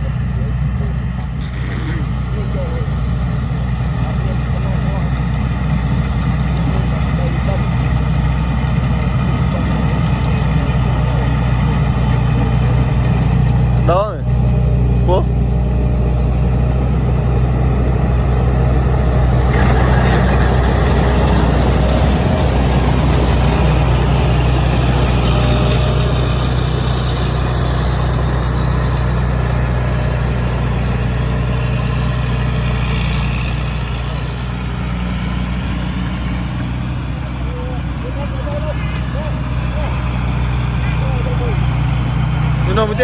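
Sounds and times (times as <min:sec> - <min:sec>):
harvester engine droning: 0:00.0 - 0:43.0.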